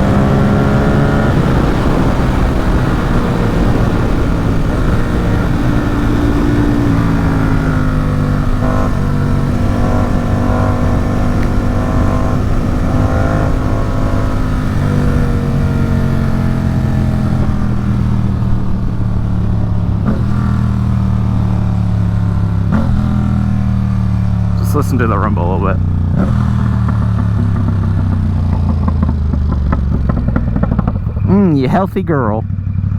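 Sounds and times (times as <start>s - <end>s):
wind rush: 0.0s - 20.5s
motorcycle engine running: 0.0s - 32.9s.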